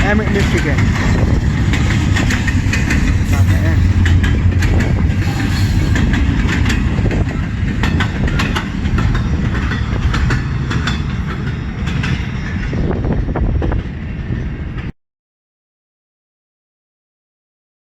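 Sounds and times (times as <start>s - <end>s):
train wheel clicks: 0.0s - 12.9s
freight train cars rolling past: 0.0s - 14.9s.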